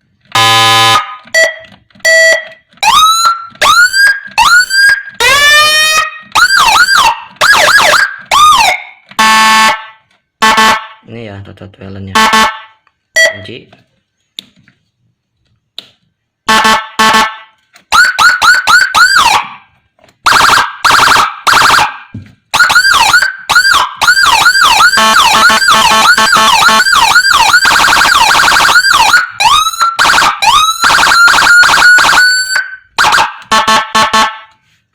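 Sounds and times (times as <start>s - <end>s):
electronic siren tones: 22.6s - 34.5s.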